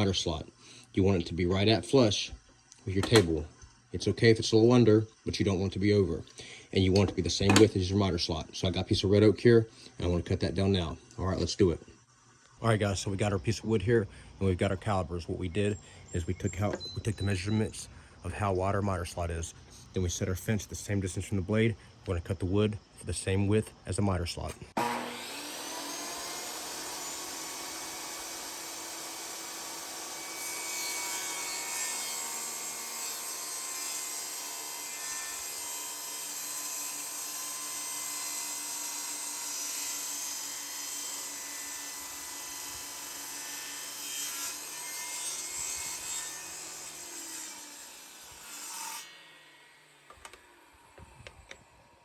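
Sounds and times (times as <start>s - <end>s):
table saw running: 24.7s - 51.1s
saw blade ripping wood: 24.8s - 40.1s.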